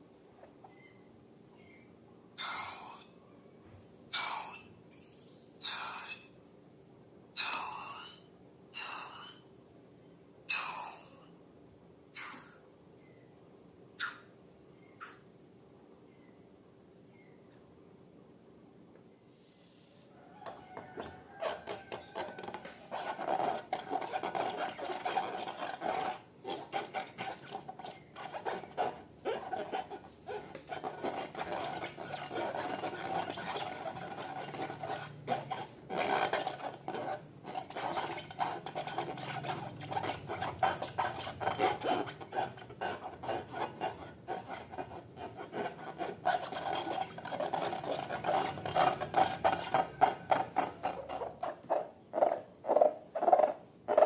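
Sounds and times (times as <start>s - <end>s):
slime rubbing and squishing: 21.4s - 51.4s.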